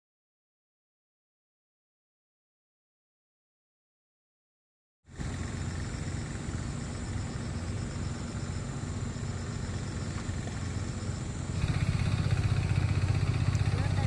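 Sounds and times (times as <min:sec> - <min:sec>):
small engine running: 0:05.1 - 0:14.0.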